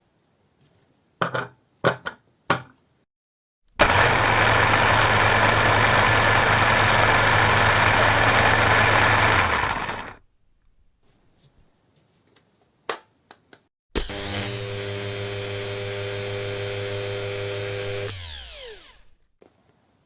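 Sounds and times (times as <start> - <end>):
hand mixer motor running: 3.8 - 10.2, 14.0 - 19.2.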